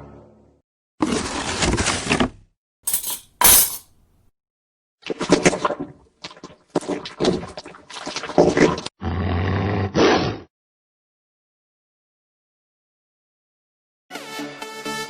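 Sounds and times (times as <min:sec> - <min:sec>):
metal fork clinking: 0:02.9 - 0:04.0.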